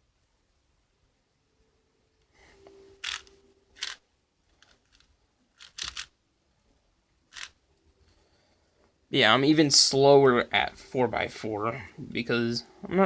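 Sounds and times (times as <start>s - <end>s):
puzzle cube layers clicking: 3.0s - 4.0s, 4.6s - 6.1s, 7.3s - 7.6s.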